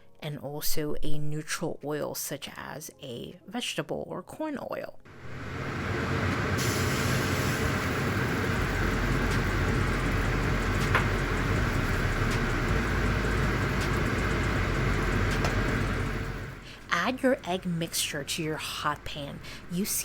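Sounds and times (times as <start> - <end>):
sizzling in a hot pan: 6.5 - 10.2.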